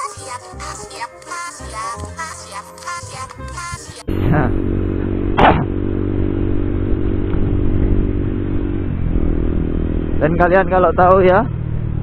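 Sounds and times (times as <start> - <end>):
background music: 0.0 - 4.3
motorcycle engine running: 3.7 - 12.0
wind and road noise: 4.6 - 12.0
brief loud burst: 5.4 - 5.7.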